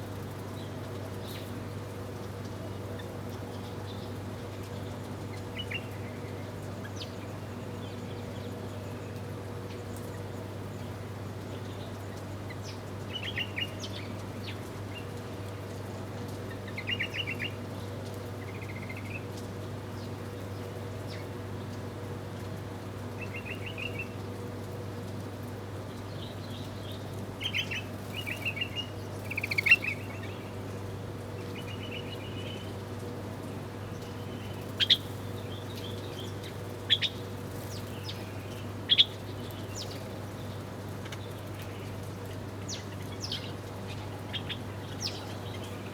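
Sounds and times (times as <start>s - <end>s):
small birds chirping: 26.1s - 45.9s.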